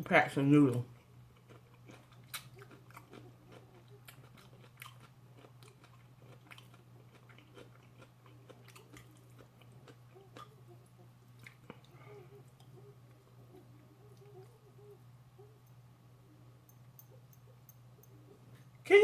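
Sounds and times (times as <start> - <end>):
low electrical hum: 0.0 - 19.0
chewing food: 0.7 - 15.8.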